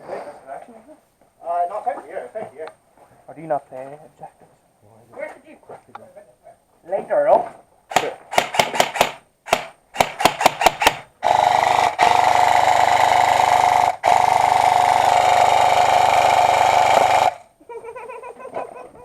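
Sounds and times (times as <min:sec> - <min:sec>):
airsoft gun firing: 0:07.9 - 0:17.4
gearbox whine: 0:08.4 - 0:17.4.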